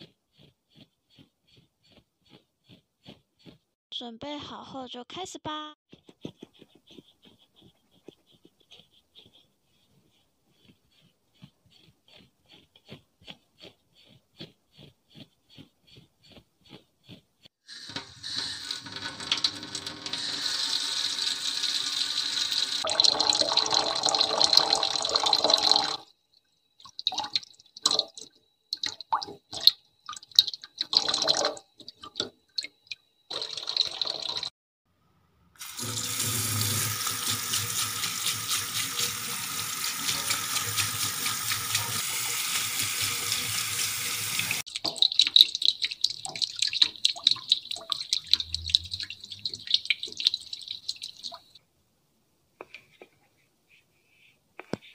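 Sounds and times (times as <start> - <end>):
tap water running: 17.7 - 26.1, 26.8 - 34.5, 35.6 - 51.6
water drips and splashes: 21.9 - 26.0, 26.8 - 34.5, 35.6 - 51.6.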